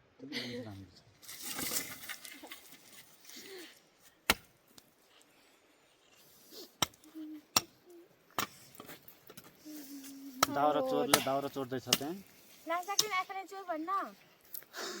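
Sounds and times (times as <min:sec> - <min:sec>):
blade chopping firewood: 0:04.2 - 0:04.6, 0:06.8 - 0:09.6, 0:10.4 - 0:12.3.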